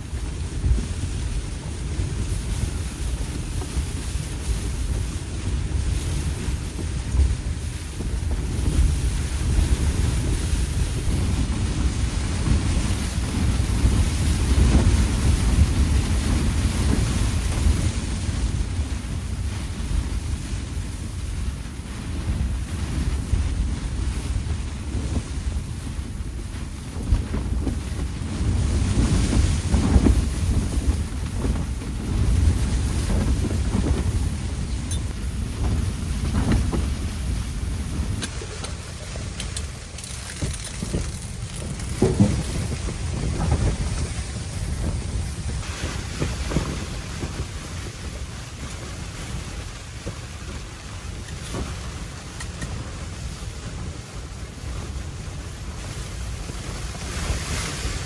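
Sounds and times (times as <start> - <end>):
blizzard wind gusting: 0.0 - 58.0
wind buffeting microphone: 0.0 - 58.0.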